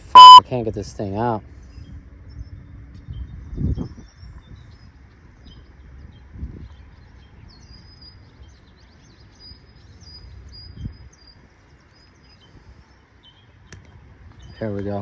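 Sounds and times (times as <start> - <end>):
small birds chirping: 0.0 - 0.4.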